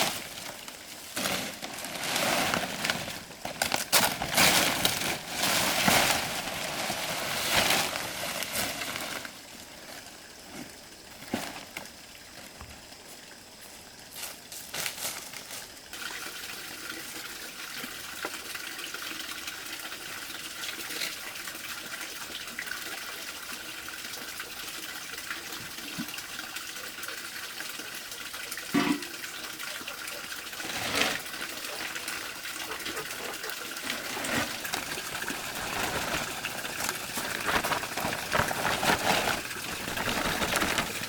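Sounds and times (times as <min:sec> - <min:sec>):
water running: 0:00.0 - 0:41.0
rustling and knocking: 0:32.6 - 0:41.0.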